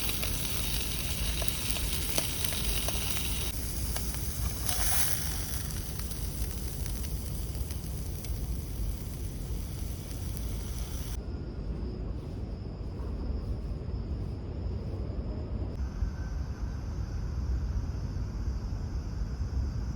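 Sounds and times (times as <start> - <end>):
food sizzling in a pan: 0.0 - 11.2
steady low rumble: 0.0 - 19.9.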